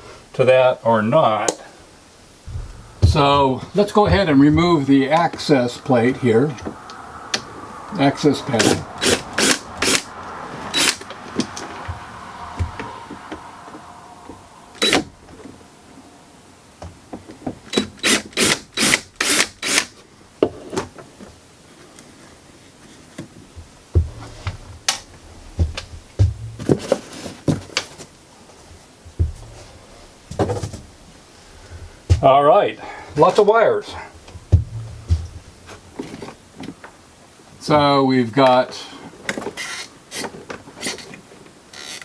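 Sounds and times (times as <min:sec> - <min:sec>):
rubbing and handling noise: 0:19.6 - 0:32.3.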